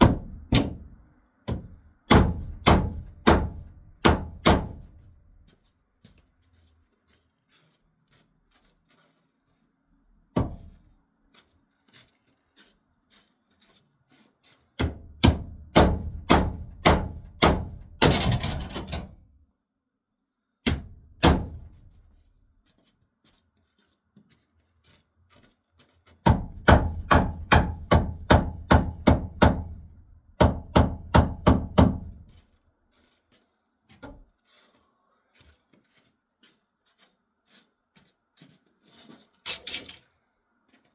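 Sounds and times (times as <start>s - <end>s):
hammer striking wood: 0.0s - 5.0s, 14.8s - 18.4s, 20.6s - 21.8s, 26.2s - 32.2s.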